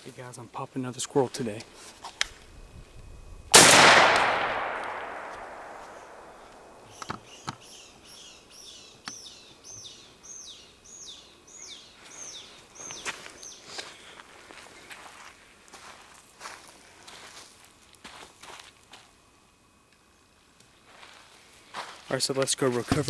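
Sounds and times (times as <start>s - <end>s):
shotgun blast echo: 3.5s - 6.8s
sharp clicks: 3.6s - 7.6s.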